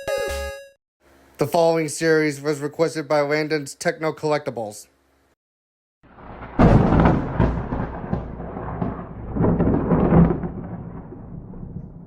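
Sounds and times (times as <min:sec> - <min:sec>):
thunder clap and rumble: 0:06.1 - 0:12.0.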